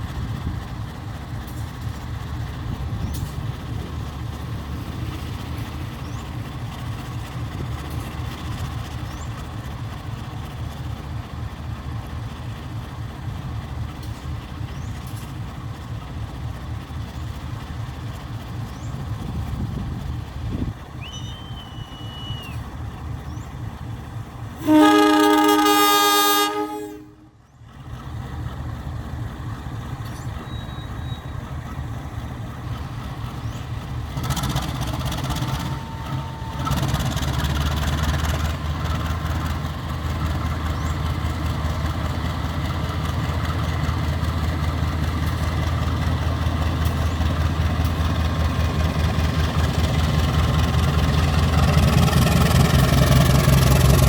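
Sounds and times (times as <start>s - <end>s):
low engine rumble: 0.0s - 54.0s
locomotive horn blast: 24.6s - 27.4s, 35.5s - 37.0s.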